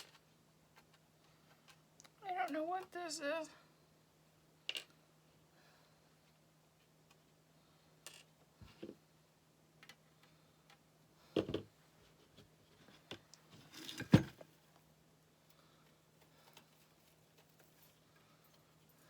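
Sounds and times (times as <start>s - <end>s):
faint low hum: 0.0s - 19.0s.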